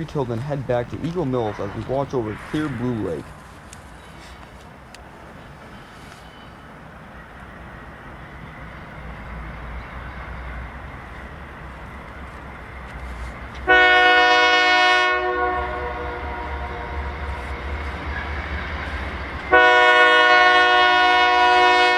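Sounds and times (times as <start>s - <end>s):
diesel locomotive rumble: 0.0s - 21.9s
locomotive horn blast: 13.6s - 18.2s, 19.5s - 21.9s.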